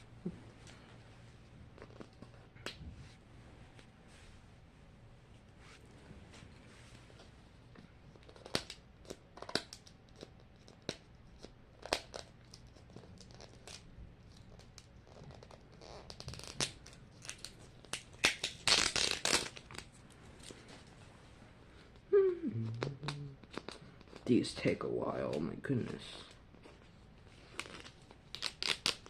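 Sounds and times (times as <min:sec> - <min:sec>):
plastic tearing: 0:11.4 - 0:20.6, 0:27.4 - 0:29.0
plastic wrapping crinkling: 0:11.9 - 0:20.9, 0:26.6 - 0:29.0.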